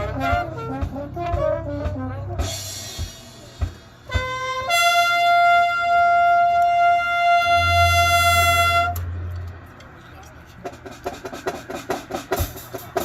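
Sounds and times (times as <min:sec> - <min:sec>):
solo wind instrument: 0:00.0 - 0:09.1.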